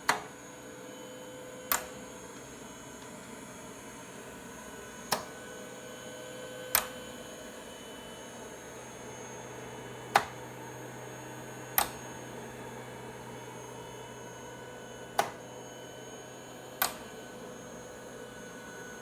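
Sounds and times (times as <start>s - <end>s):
ventilator clicks: 1.7s - 2.0s, 6.7s - 7.0s, 10.1s - 10.4s, 11.8s - 12.0s, 15.2s - 15.4s, 16.8s - 17.1s.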